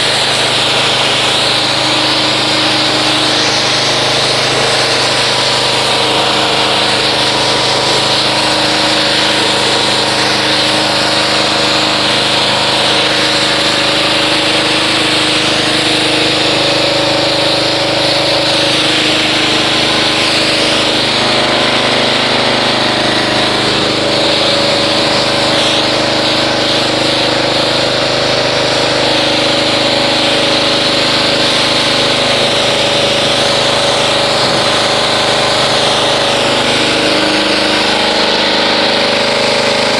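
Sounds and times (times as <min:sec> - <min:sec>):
pressure washer pump humming: 0:00.0 - 0:39.9
water spray hissing: 0:00.0 - 0:39.9.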